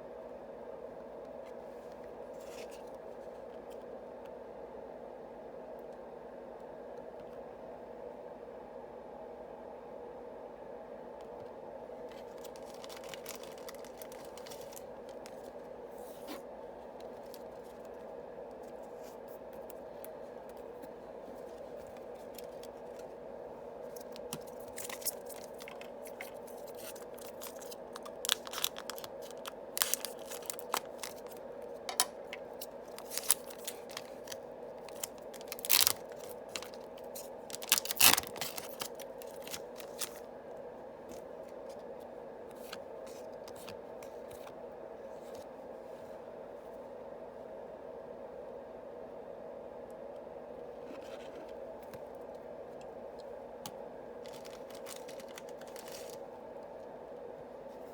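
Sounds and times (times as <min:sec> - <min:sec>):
steady low hum: 0:00.0 - 0:57.9
wrapper tearing and crinkling: 0:12.2 - 0:15.5, 0:24.0 - 0:40.2, 0:54.2 - 0:56.2.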